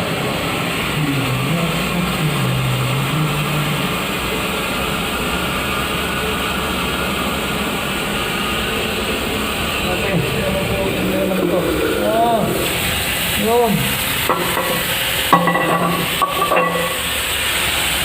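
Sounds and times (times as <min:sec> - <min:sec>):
water rushing into toilet tank: 0:09.8 - 0:18.0.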